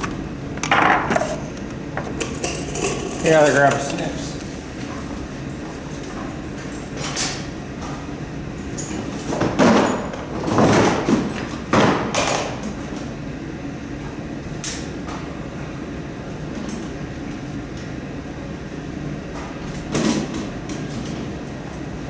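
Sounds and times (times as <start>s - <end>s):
handling scrapes and knocks: 0.0s - 4.6s
low background hum: 0.0s - 22.0s.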